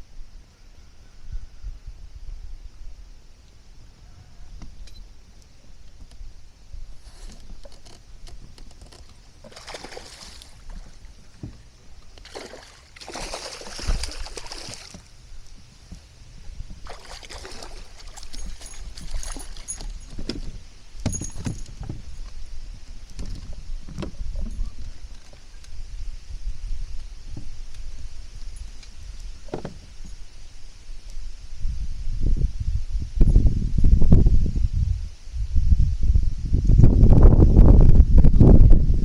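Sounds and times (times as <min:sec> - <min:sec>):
wind rumbling on microphone: 0:00.0 - 0:39.0
water splashing and hissing: 0:08.8 - 0:21.0.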